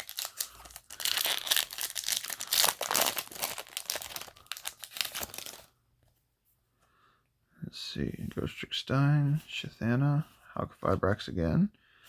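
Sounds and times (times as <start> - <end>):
foil wrapper crinkling: 0.0 - 5.7.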